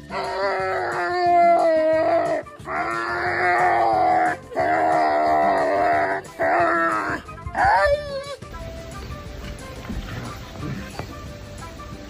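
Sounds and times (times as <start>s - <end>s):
animal wailing cries: 0.0s - 8.4s.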